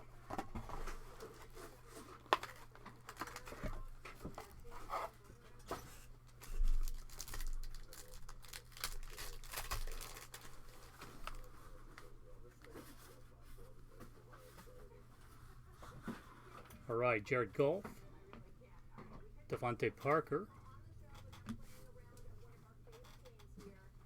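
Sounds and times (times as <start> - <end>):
rustling packaging and cards: 0.0 - 16.8
wrappers tearing and crinkling: 1.2 - 3.6, 6.3 - 11.5.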